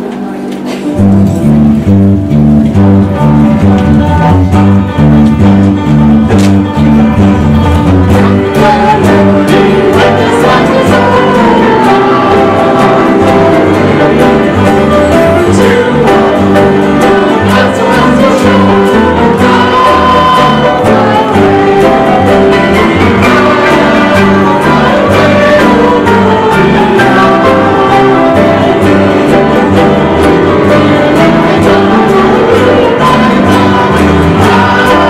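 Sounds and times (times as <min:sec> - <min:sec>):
instrumental accompaniment: 0:00.0 - 0:35.0
congregation singing a hymn: 0:07.8 - 0:35.0.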